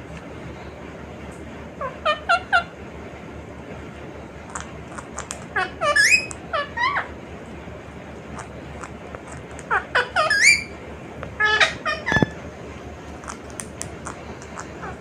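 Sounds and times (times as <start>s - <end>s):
parrot calling: 1.8s - 2.7s, 4.5s - 7.1s, 8.4s - 12.4s, 13.2s - 15.0s
parrot chattering: 1.8s - 2.7s, 4.4s - 7.1s, 8.3s - 12.4s, 13.2s - 15.0s.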